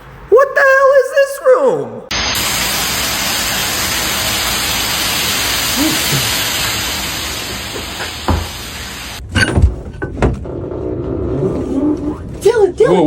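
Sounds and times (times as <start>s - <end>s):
loud steady hiss: 2.1s - 9.2s.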